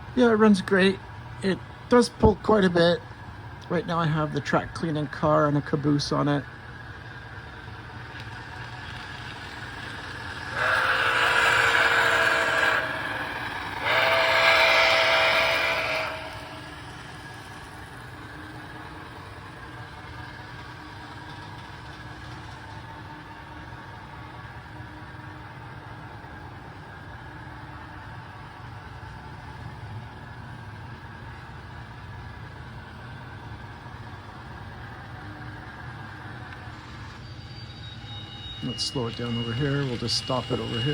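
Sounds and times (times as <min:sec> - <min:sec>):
low train running rumble: 0:00.0 - 0:40.9
model train steam whistle: 0:09.8 - 0:17.5, 0:37.3 - 0:40.9.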